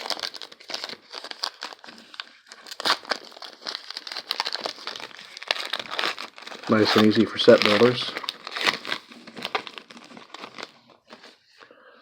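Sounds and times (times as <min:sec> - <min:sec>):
cards rustling and flicking: 0:02.8 - 0:11.4.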